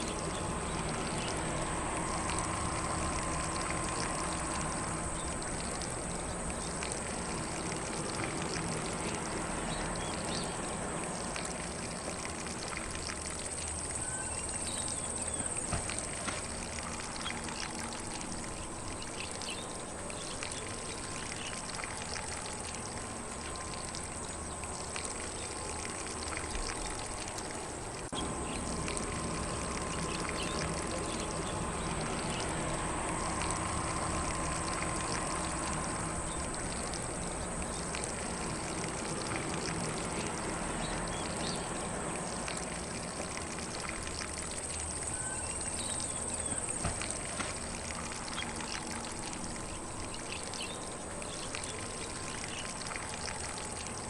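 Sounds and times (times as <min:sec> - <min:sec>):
high-pitched insect hum: 0:00.0 - 0:54.0
sprinkler spraying water on grass: 0:00.0 - 0:54.0.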